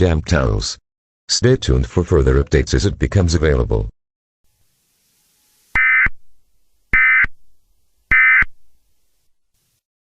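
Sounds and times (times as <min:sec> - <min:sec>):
digital data tone bursts: 0:05.4 - 0:06.2, 0:06.9 - 0:07.4, 0:08.1 - 0:08.5.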